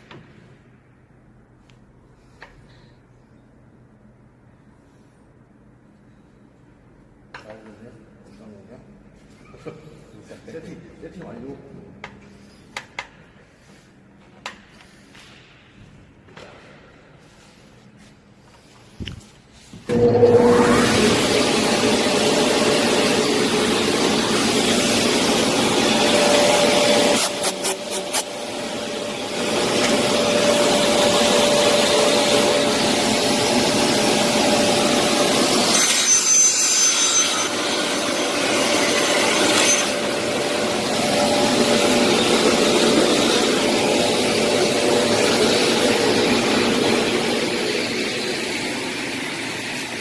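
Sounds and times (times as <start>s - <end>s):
circular saw cutting metal: 19.9s - 50.0s.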